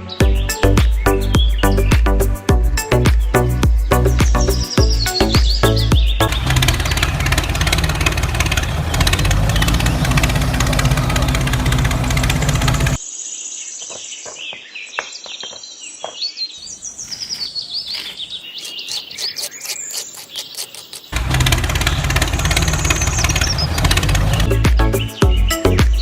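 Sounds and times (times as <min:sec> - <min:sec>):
background music: 0:00.0 - 0:07.1, 0:23.9 - 0:26.0
birds chirping: 0:00.0 - 0:26.0.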